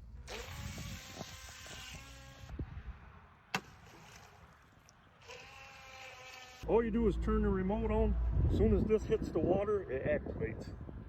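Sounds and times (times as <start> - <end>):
electric motor whining: 0.2 - 2.5.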